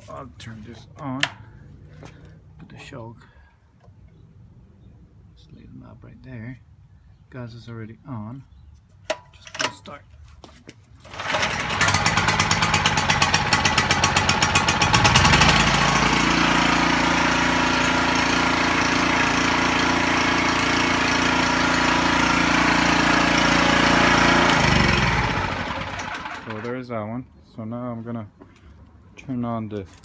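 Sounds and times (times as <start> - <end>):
generator running: 11.0 - 26.7
starter cranking engine: 11.0 - 26.7.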